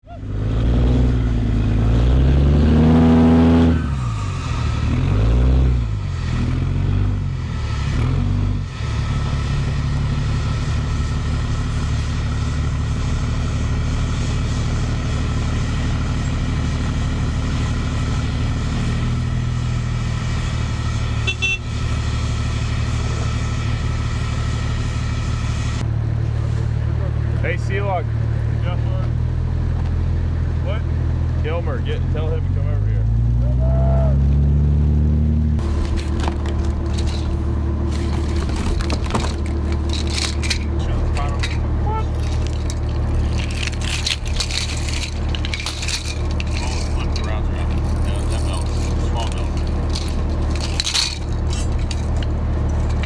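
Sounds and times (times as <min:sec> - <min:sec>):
vehicle engine revving: 0:00.0 - 0:53.0.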